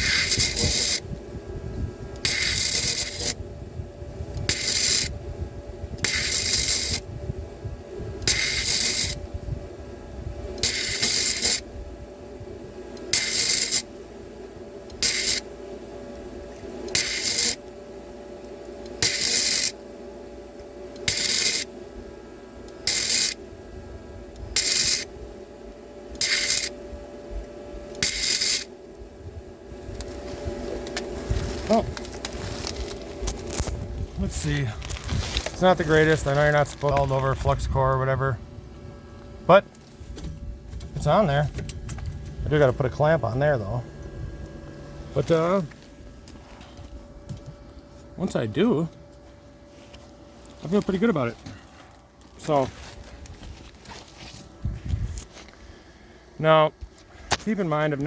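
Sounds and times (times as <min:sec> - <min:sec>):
welding arc crackling and hissing: 0:00.0 - 0:09.9, 0:10.5 - 0:19.9, 0:20.9 - 0:22.0, 0:22.7 - 0:25.5, 0:26.1 - 0:29.0, 0:29.7 - 0:38.4, 0:39.5 - 0:55.8
steady hum: 0:00.0 - 0:58.0.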